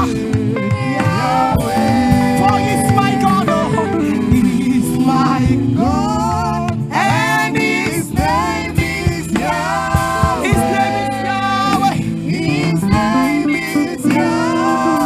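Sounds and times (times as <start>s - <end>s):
instrumental backing with drum beat: 0.0s - 15.0s
person singing long phrases: 0.8s - 6.8s.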